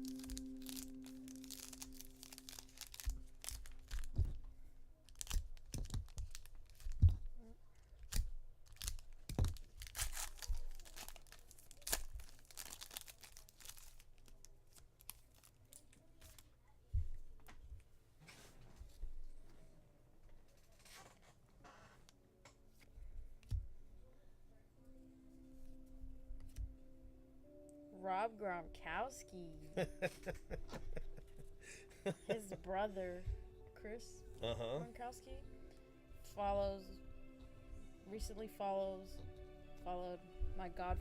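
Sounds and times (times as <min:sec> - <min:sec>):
plastic wrappers tearing and crinkling: 0:00.0 - 0:04.4, 0:05.0 - 0:16.5
cards rustling and clicking: 0:05.1 - 0:07.4.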